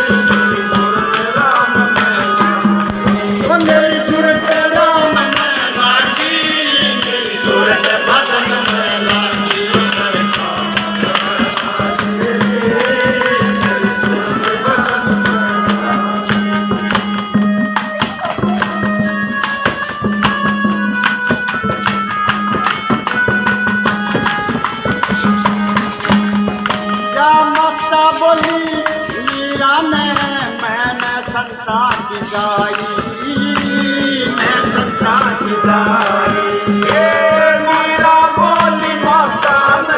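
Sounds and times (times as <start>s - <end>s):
person singing: 0.0s - 17.1s, 26.8s - 39.9s
melody instrument holding notes: 0.0s - 31.2s
fast rhythmic percussion: 0.0s - 39.9s.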